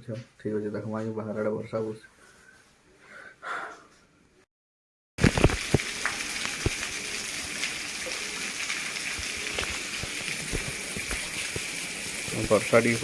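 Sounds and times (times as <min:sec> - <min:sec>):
drips and splashes: 0:05.2 - 0:13.0
heavy rain pouring: 0:05.2 - 0:13.0.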